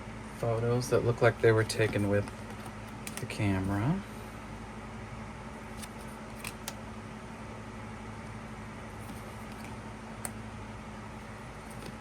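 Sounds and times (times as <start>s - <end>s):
low electrical hum: 0.0s - 12.0s
faint clicks of cards handled: 1.7s - 3.4s, 5.7s - 6.8s, 9.0s - 10.4s, 11.6s - 12.0s.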